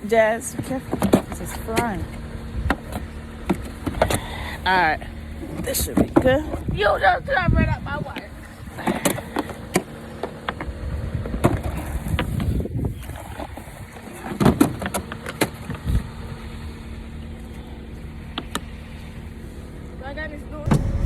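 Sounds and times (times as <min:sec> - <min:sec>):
car idling: 0:00.0 - 0:06.8, 0:15.1 - 0:21.0
sharp knocks and thumps: 0:20.7 - 0:21.0.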